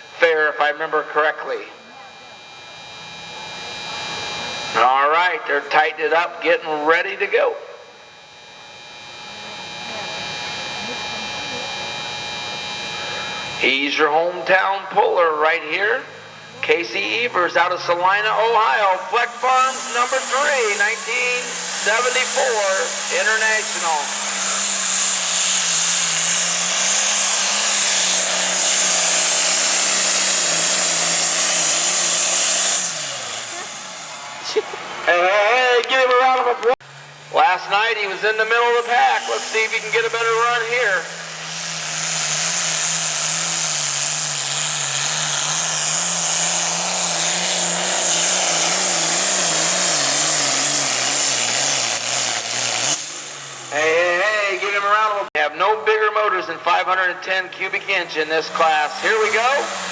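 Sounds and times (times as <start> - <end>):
tractor engine running flat out: 7.8 - 55.3.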